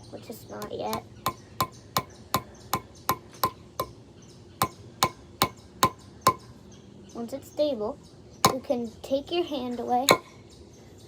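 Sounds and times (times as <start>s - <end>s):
hammer tapping a nail into wood: 0.6s - 3.9s, 4.6s - 6.4s.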